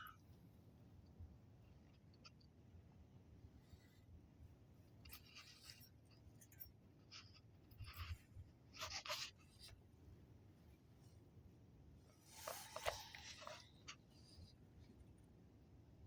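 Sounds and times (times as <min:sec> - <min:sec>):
soft scratchy rustles: 0:04.8 - 0:09.9, 0:12.0 - 0:15.2.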